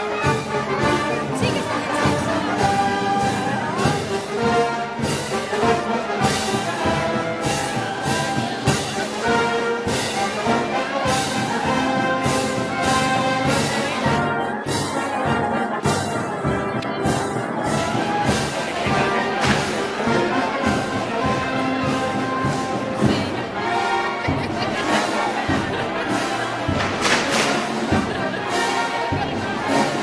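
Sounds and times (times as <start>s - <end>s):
trombones and trumpets playing march: 0.0s - 30.0s
drum and cymbal strikes: 15.8s - 23.5s, 24.2s - 30.0s.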